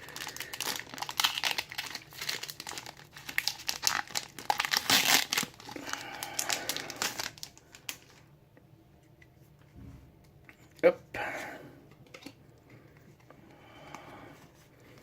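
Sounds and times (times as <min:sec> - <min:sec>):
foil wrapper crinkling: 0:00.0 - 0:08.2.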